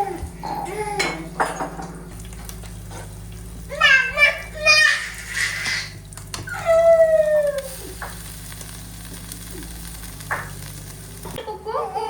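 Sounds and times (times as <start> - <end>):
food sizzling in a frying pan: 1.0 - 11.4.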